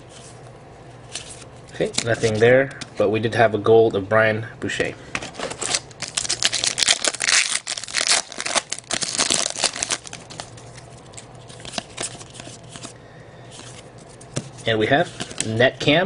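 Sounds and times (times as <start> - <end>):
cards rustling and clicking: 1.1 - 2.5, 5.2 - 15.6
wrapper tearing and crinkling: 5.4 - 12.6.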